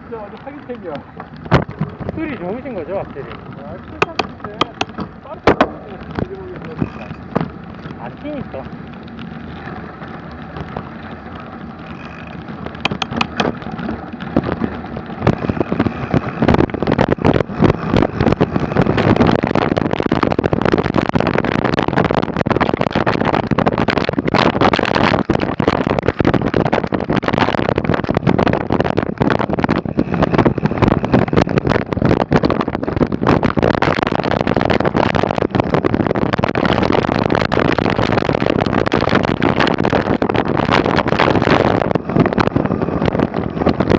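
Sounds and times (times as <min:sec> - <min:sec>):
bike rattling over bumps: 0:00.0 - 0:43.9
wind on microphone: 0:00.0 - 0:43.9.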